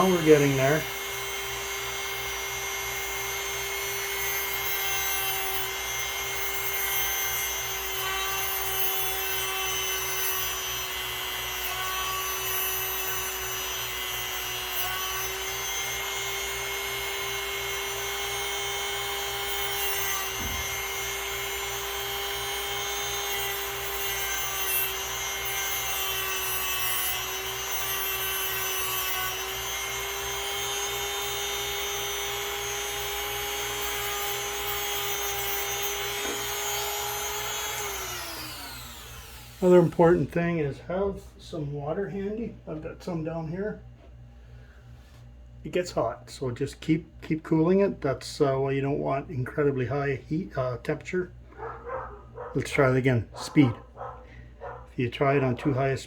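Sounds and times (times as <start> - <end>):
grinding wheel motor hum: 0.0 - 12.4, 29.2 - 40.4.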